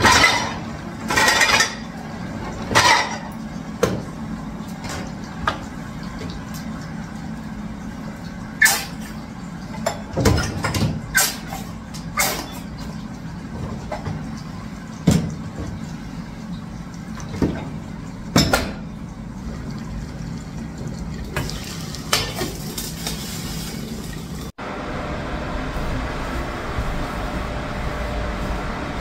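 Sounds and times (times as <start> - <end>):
dishes and cutlery clinking: 0.0 - 1.9
low background hum: 0.0 - 29.0.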